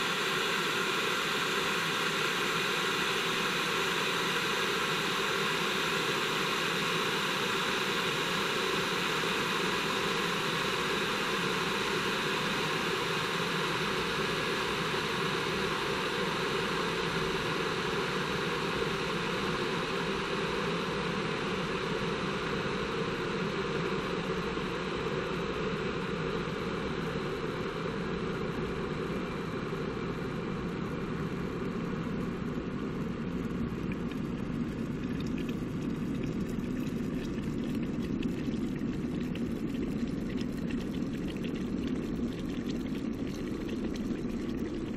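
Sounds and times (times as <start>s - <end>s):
electric water boiler rushing: 34.9s - 44.9s.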